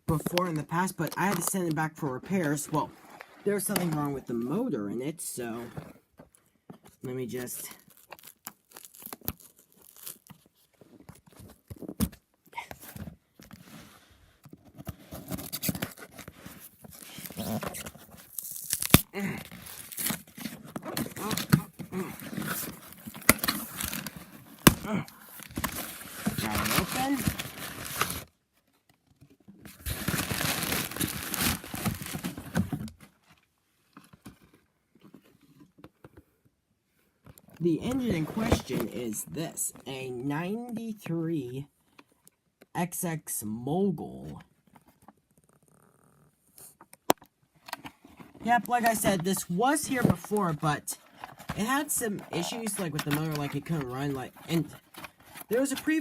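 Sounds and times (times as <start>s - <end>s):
packaging crinkling and tearing: 0.1s - 1.8s, 7.3s - 11.9s, 14.8s - 28.3s, 29.6s - 33.0s, 47.1s - 56.0s
cardboard parcel being opened: 0.1s - 4.6s, 7.2s - 35.8s, 37.7s - 39.8s, 44.6s - 56.0s.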